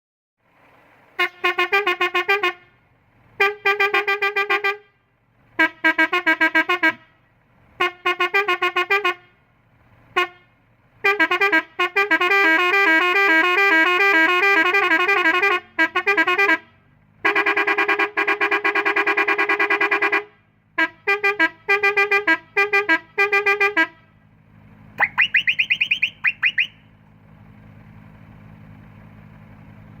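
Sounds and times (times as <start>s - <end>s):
melodic air horn: 1.2s - 2.7s, 3.4s - 5.0s, 5.6s - 7.1s, 7.8s - 9.3s, 11.0s - 24.0s
whistle horn rising whistles: 25.0s - 26.9s.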